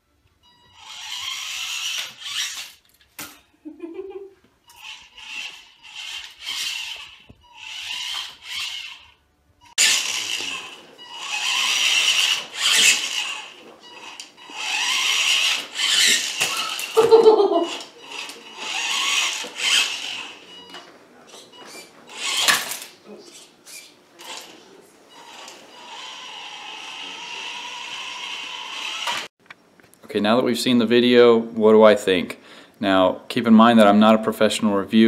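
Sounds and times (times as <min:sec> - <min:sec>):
toy car electric motor whirring: 0:00.6 - 0:02.9, 0:04.6 - 0:20.7, 0:21.3 - 0:29.3.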